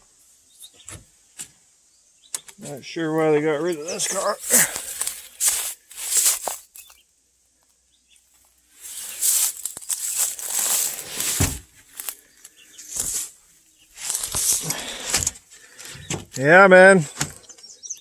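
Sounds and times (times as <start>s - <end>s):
rustling and crunching: 3.2s - 17.6s
dull thumps: 9.6s - 12.1s.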